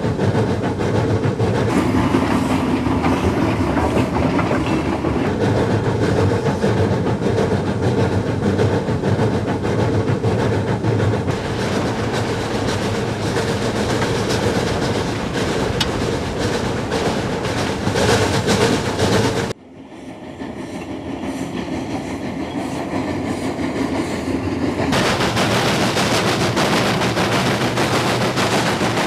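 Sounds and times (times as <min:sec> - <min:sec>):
steam locomotive wheels clattering: 0:00.0 - 0:19.6, 0:20.2 - 0:29.0.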